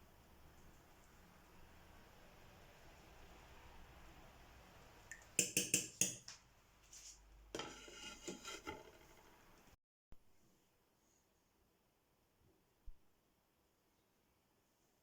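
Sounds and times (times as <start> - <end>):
kitchenware clinking: 5.4 - 6.3
kitchenware scraping: 7.5 - 9.4.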